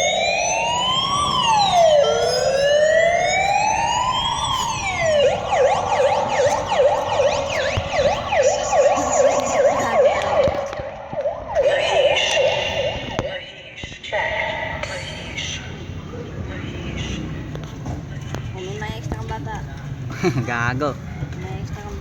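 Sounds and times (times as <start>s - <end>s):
toy electronic siren: 0.0s - 13.3s.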